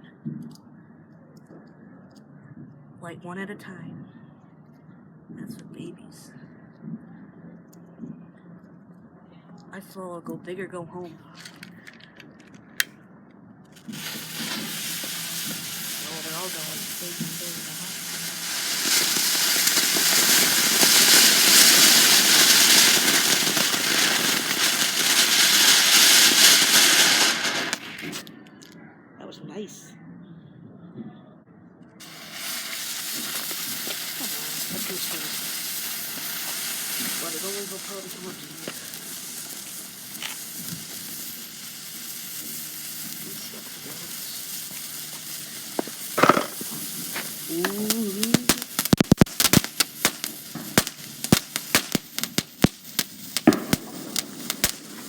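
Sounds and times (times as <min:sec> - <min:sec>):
fireworks hissing and crackling: 0:11.1 - 0:12.6, 0:13.7 - 0:28.8, 0:32.0 - 0:55.0.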